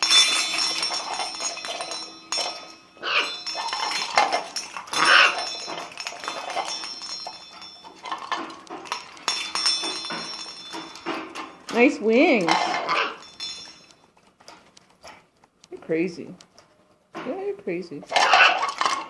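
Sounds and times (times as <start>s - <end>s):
metallic clinking and clattering: 0.0s - 17.4s, 18.1s - 19.0s.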